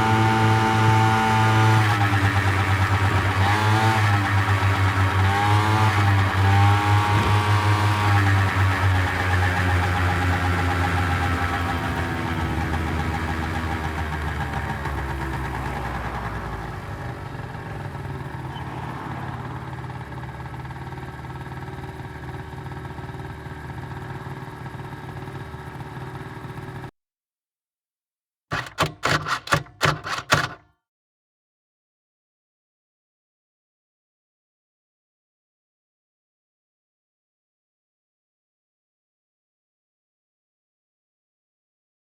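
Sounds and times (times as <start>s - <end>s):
motor scooter engine running: 0.0s - 26.9s, 28.5s - 30.6s.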